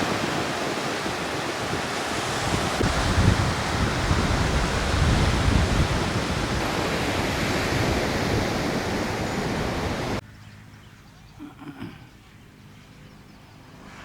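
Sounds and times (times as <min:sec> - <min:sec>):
sea: 0:00.0 - 0:10.2
wind buffeting microphone: 0:00.0 - 0:10.2
wind: 0:00.0 - 0:14.0.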